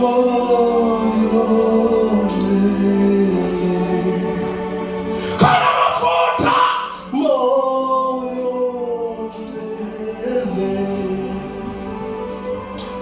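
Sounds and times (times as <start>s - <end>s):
person singing gospel: 0.0s - 13.0s
sustained backing music: 0.0s - 13.0s.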